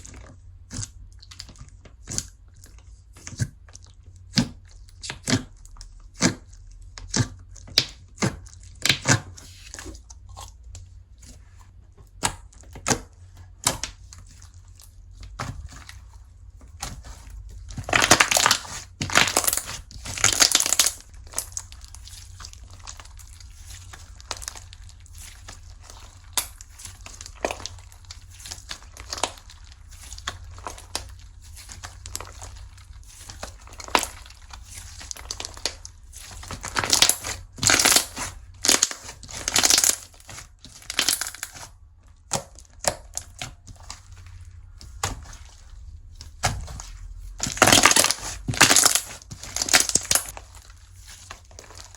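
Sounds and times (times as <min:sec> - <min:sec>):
slime crackling and popping: 0:16.7 - 0:51.9.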